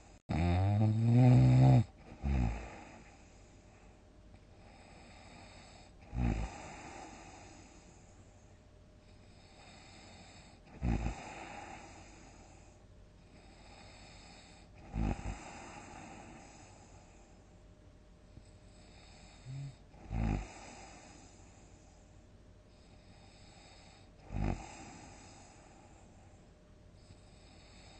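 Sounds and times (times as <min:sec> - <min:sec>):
faint breathing hiss: 0:00.0 - 0:27.9
person snoring loudly: 0:00.3 - 0:03.1, 0:05.0 - 0:07.5, 0:09.7 - 0:12.1, 0:13.7 - 0:16.5, 0:19.0 - 0:21.1, 0:24.2 - 0:25.3.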